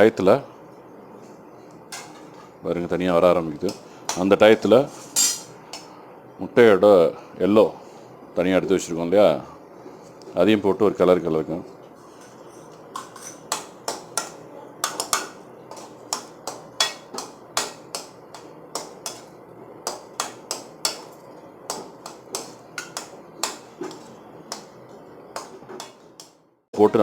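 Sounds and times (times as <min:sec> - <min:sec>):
spoon knocking and scraping pan: 0:01.9 - 0:02.6, 0:12.0 - 0:26.4.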